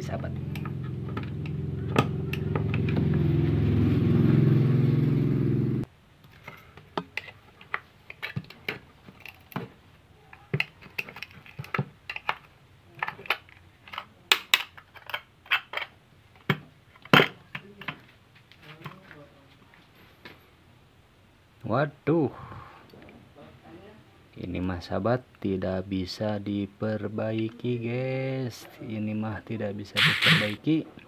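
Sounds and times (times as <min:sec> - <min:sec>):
metal parts clicking and tapping: 0:10.3 - 0:18.0.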